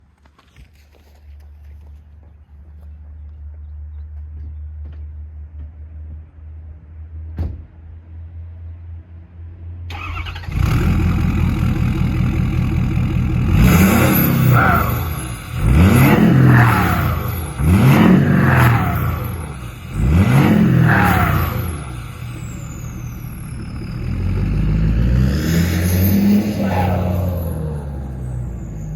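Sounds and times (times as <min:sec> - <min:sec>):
diesel engine revving: 0:09.9 - 0:28.9.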